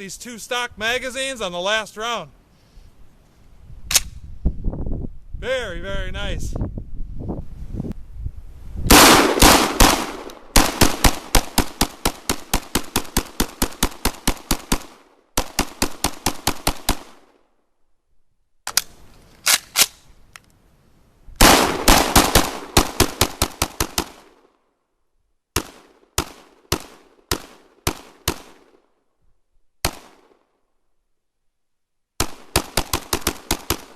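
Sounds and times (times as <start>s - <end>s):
pistol gunshots: 8.9s - 17.3s, 21.4s - 24.3s, 25.6s - 28.8s, 29.8s - 30.4s, 32.2s - 33.9s.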